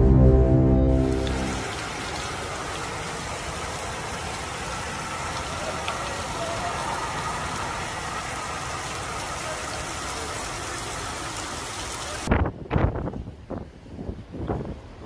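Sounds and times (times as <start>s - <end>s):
dramatic music: 0.0s - 1.8s
heavy rain falling: 0.0s - 12.3s.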